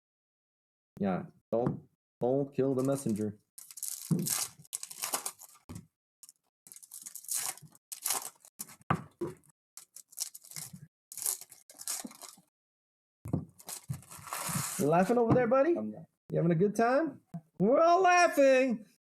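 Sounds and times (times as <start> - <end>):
foil wrappers tearing and crinkling: 2.8 - 5.6, 6.3 - 8.8, 9.8 - 12.5, 13.6 - 14.9.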